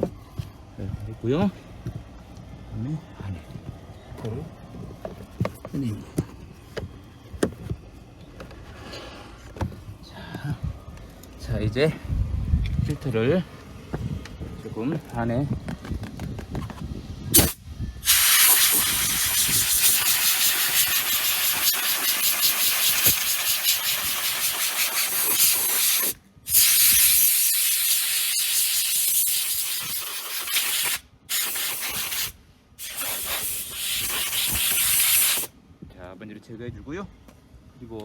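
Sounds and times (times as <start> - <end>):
compressed air hissing: 17.3 - 35.6.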